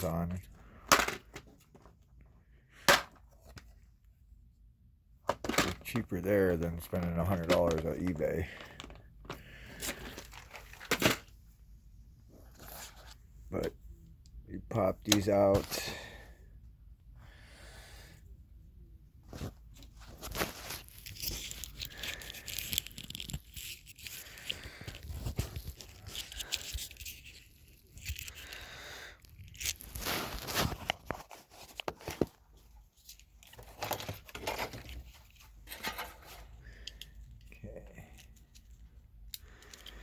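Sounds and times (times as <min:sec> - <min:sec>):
plastic connector parts clicking: 0:38.1 - 0:40.0.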